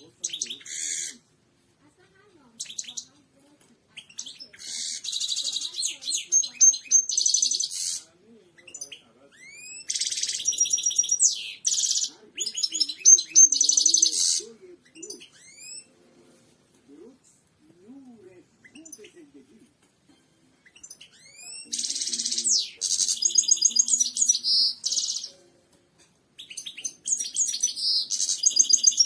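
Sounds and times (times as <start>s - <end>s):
goldfinch twittering and trills: 4.0s - 8.0s, 8.6s - 14.4s, 20.6s - 25.4s, 26.4s - 29.0s.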